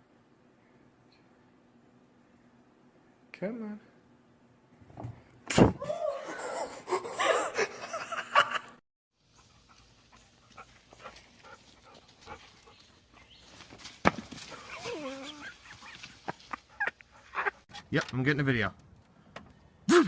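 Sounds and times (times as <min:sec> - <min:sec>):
dog whining and yelping: 0:14.5 - 0:16.0.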